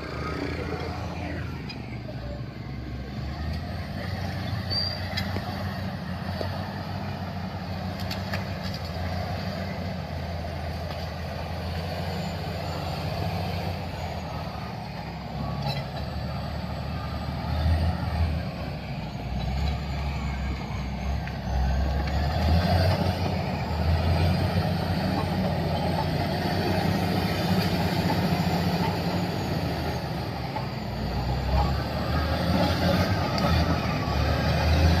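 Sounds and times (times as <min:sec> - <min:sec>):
heavy machinery engine rumble: 0:00.0 - 0:35.0.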